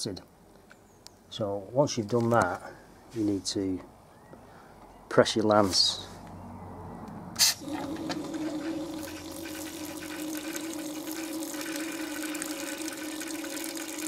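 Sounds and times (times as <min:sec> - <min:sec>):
water rushing: 0:07.6 - 0:14.0
water spurting from lance: 0:07.6 - 0:14.0.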